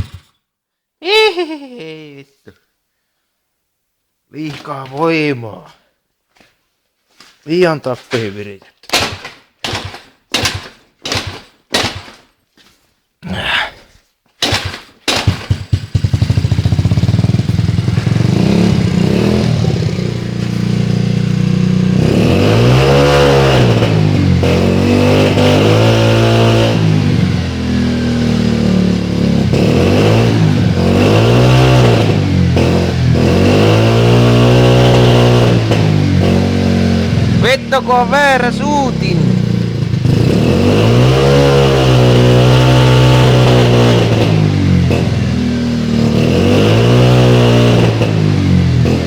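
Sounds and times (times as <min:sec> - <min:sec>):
scooter engine revving: 0:14.4 - 0:49.0
scooter engine sputtering and idling: 0:14.4 - 0:49.0.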